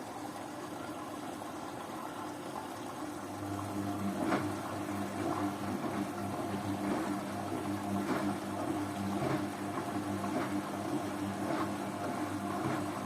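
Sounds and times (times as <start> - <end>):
low motor hum: 3.1 - 13.0
water sloshing: 3.6 - 13.0.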